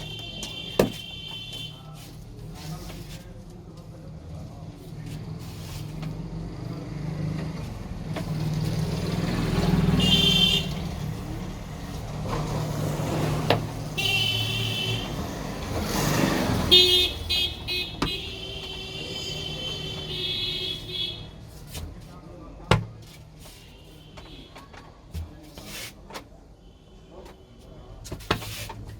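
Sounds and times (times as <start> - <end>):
vehicle horns honking: 0.0 - 2.0, 9.8 - 11.1, 13.9 - 15.6, 16.5 - 21.4
traffic engines rumbling: 0.0 - 28.9.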